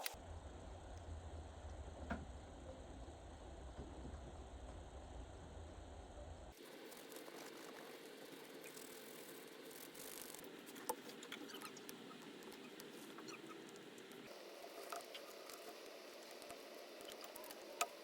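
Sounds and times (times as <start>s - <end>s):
soft steady hum: 0.0s - 18.0s.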